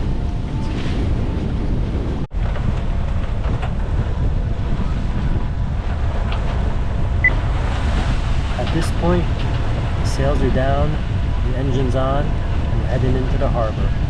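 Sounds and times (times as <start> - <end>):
wind rumbling on microphone: 0.0 - 14.0
waves washing: 6.6 - 14.0.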